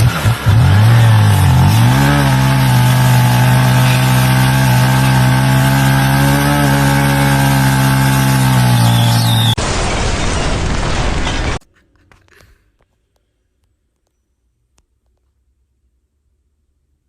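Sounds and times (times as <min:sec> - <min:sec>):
engine running loudly: 0:00.0 - 0:09.6.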